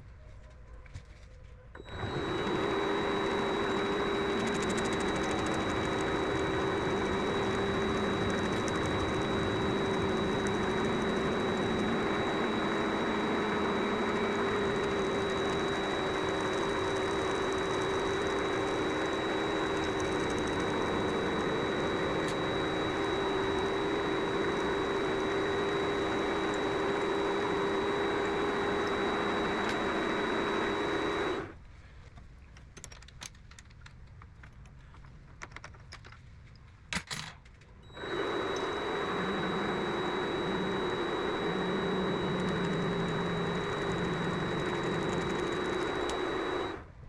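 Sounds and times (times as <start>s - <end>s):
lathe motor humming and whining: 1.8s - 31.6s, 37.9s - 46.9s.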